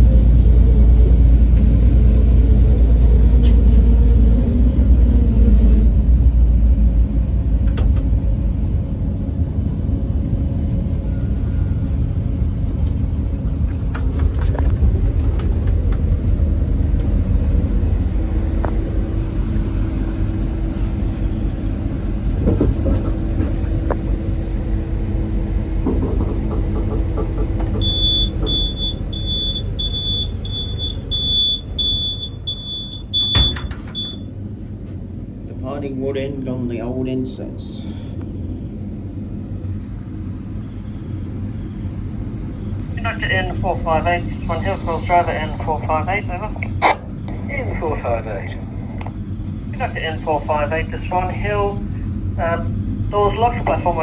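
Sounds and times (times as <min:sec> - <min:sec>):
train wheels rumbling: 0:00.0 - 0:46.6
high electronic beeps: 0:27.8 - 0:34.2.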